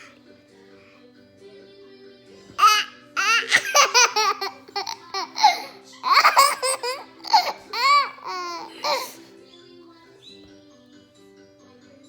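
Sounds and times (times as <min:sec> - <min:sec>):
young child laughing: 0:02.6 - 0:09.2.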